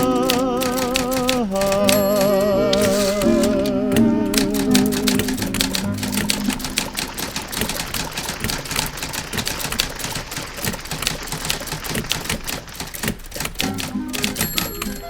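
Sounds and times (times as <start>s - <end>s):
typewriter keys clacking: 0.0s - 15.0s
old radio song note: 1.5s - 7.2s.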